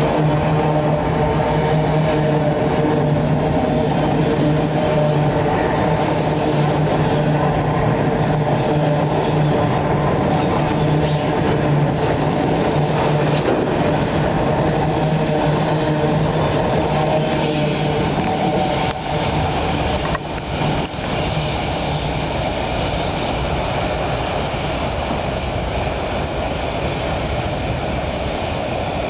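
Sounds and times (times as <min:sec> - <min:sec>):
train wheels rumbling on rails: 0:00.0 - 0:29.0.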